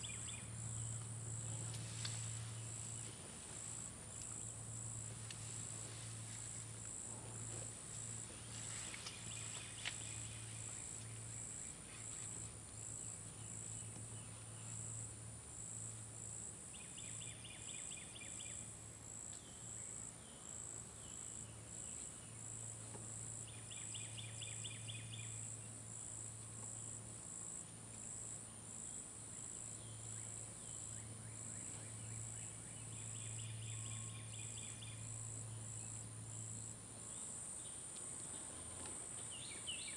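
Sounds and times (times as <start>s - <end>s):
insects chirping: 0.0s - 39.9s
low steady hum: 0.0s - 39.9s
low fast insect trill: 14.6s - 39.9s.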